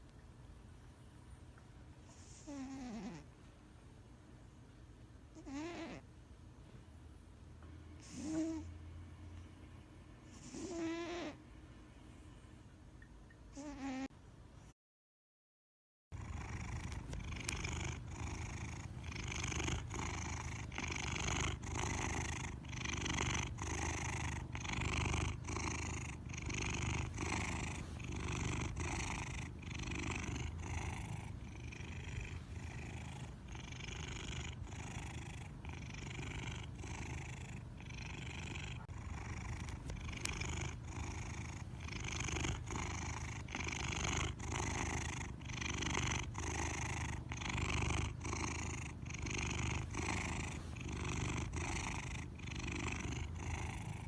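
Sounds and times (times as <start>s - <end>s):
pet snoring: 2.1s - 3.3s, 5.4s - 6.0s, 8.0s - 8.8s, 10.3s - 11.4s, 13.6s - 14.1s, 16.2s - 54.0s.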